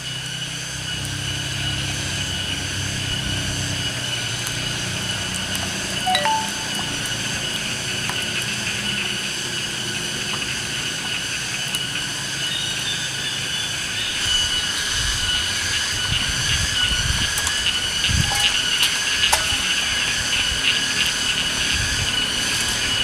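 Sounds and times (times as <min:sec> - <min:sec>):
insect chorus drone: 0:00.0 - 0:06.0, 0:07.2 - 0:23.0.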